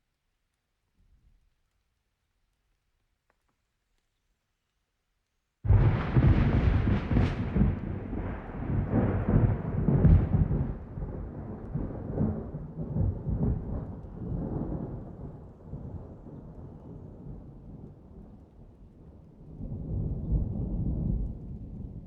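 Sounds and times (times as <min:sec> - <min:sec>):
steady rain: 0:01.5 - 0:22.0
rolling thunder: 0:05.7 - 0:22.0.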